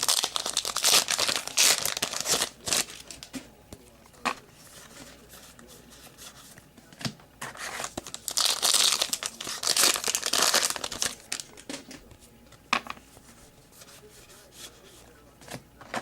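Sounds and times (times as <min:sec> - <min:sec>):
foil wrapper crinkling: 0:00.0 - 0:03.3, 0:07.5 - 0:11.9.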